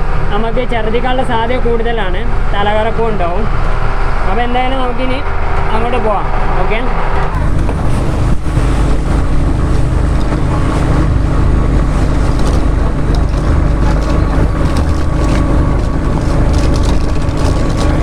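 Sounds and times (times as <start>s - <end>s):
boat engine running: 7.2s - 18.0s
water wash: 7.3s - 18.0s.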